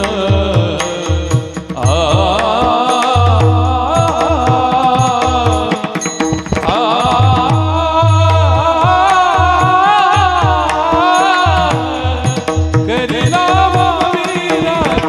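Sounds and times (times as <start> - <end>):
devotional melody sung: 0.0 - 15.0
drum strokes: 0.0 - 15.0.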